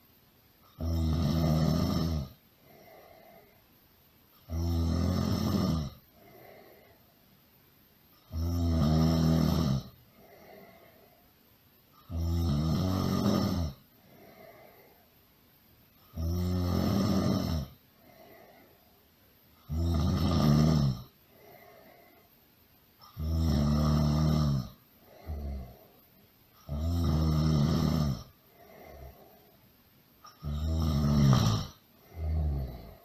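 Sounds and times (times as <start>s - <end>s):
person snoring loudly: 0.7s - 3.5s, 4.4s - 6.6s, 8.2s - 10.8s, 12.0s - 14.6s, 16.1s - 18.2s, 19.6s - 21.1s, 23.0s - 25.9s, 26.6s - 29.3s, 30.2s - 33.0s
faint breath out: 6.1s - 7.2s, 14.0s - 15.2s, 21.2s - 22.4s.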